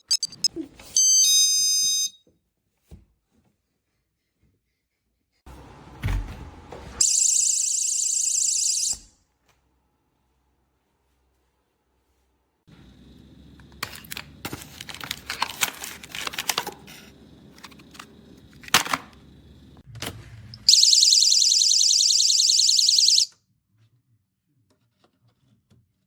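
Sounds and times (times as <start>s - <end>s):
high-pitched pulsing alarm siren: 7.0s - 9.1s, 20.6s - 23.3s.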